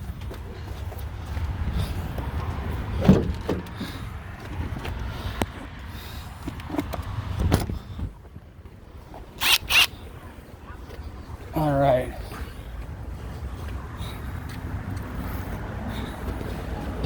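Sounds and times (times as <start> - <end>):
cordless drill motor whirring: 9.4 - 9.9.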